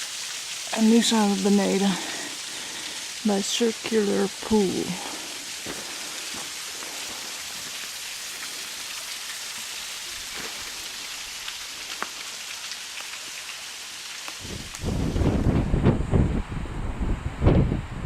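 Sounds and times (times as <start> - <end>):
falling water hissing: 0.0 - 16.4
wind rumble on microphone: 14.4 - 18.0.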